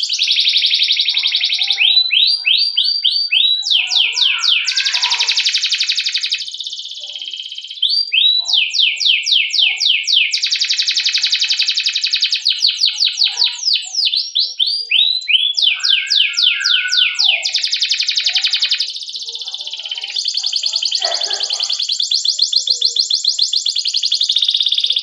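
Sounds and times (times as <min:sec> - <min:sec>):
canary singing: 0:00.0 - 0:25.0
canary rolling trills: 0:15.6 - 0:23.4.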